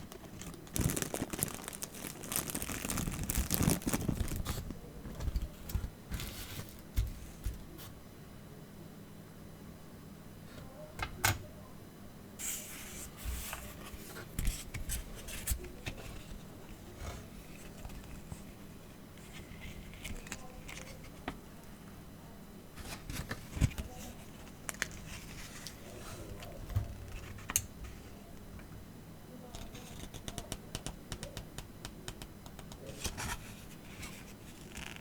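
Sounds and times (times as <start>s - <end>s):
packaging snips and rustles: 0.0s - 7.6s.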